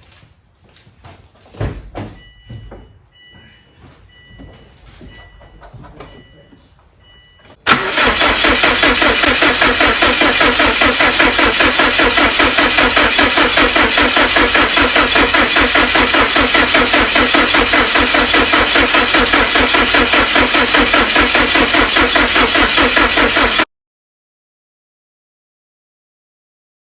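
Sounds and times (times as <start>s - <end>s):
engine cranking on starter: 7.6s - 23.7s.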